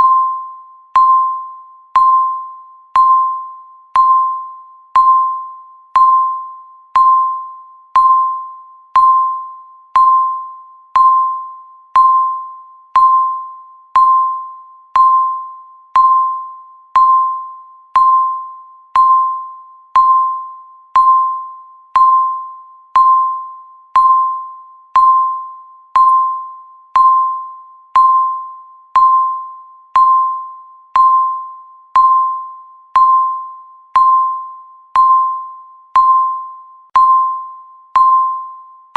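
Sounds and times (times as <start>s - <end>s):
timer electronic beeps: 0.0s - 38.9s.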